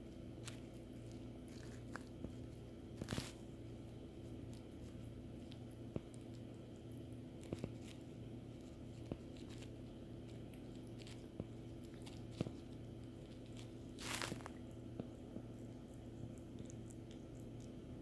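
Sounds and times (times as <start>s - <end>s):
short rustle: 13.6s - 14.6s.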